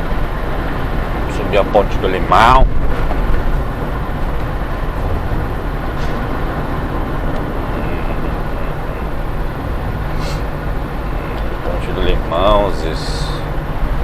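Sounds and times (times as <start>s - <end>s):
vehicle engine and road rumble: 0.0s - 14.0s.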